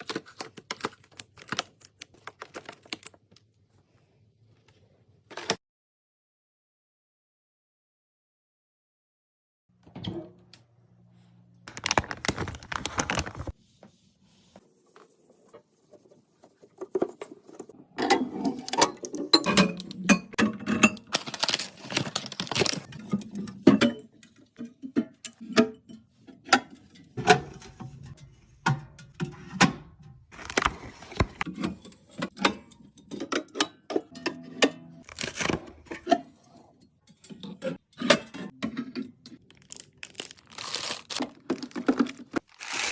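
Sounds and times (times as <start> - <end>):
packaged snacks and containers handled: 0.0 - 3.8, 11.6 - 13.6, 21.0 - 22.9, 30.3 - 31.5, 35.0 - 36.1, 39.4 - 42.9.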